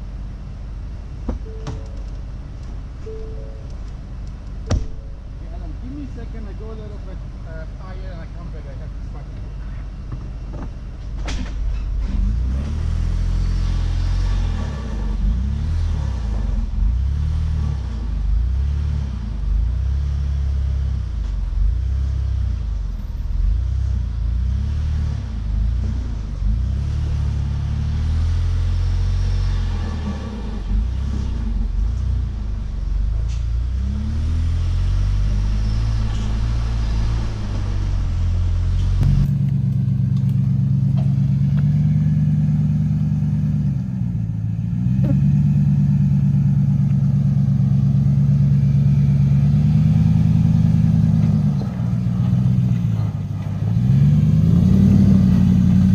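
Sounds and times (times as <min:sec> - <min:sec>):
truck engine revving at low speed: 0:11.5 - 0:55.9.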